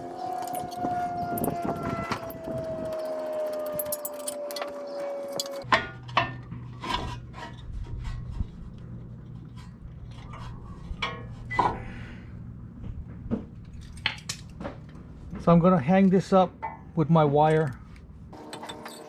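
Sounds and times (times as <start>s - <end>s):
metal tools clinking: 0.1s - 5.6s, 18.4s - 19.0s
sharp metallic clicks: 0.3s - 5.6s.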